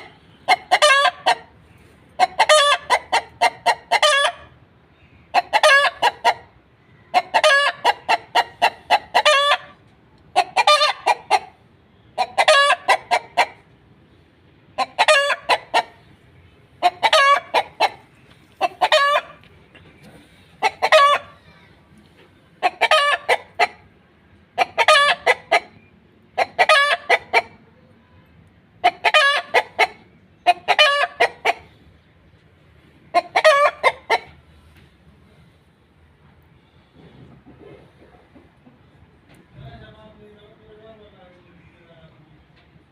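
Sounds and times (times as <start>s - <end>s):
chicken clucking: 0.0s - 4.6s, 5.2s - 11.6s, 12.2s - 13.8s, 14.7s - 27.9s, 28.8s - 34.9s, 36.2s - 39.5s.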